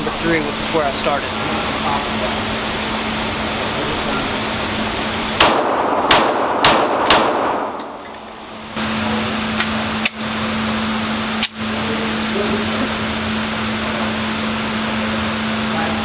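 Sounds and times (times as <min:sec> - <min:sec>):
steady hum: 0:00.0 - 0:16.0
pistol shots: 0:05.4 - 0:07.9.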